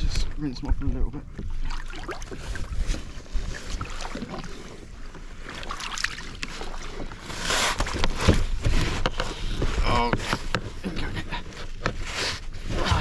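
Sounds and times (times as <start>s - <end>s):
wind rumble on microphone: 0.0s - 3.9s
water sloshing and splashing: 0.0s - 13.0s.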